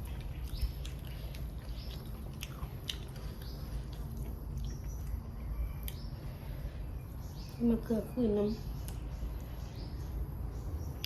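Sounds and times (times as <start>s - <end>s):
person chewing crunchy fruit: 0.0s - 7.6s.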